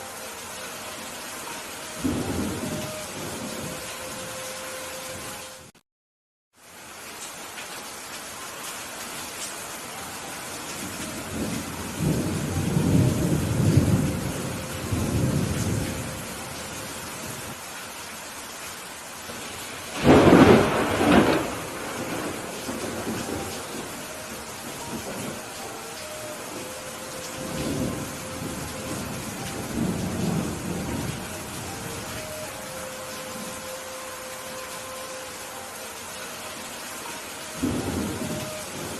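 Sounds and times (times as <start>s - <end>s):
steady rain falling: 0.0s - 5.8s, 6.5s - 38.9s
low rolling thunder rumble: 2.0s - 4.2s, 11.1s - 17.5s, 19.3s - 25.6s, 26.5s - 33.6s, 37.6s - 38.9s
sharp thunderclap: 20.0s - 23.4s.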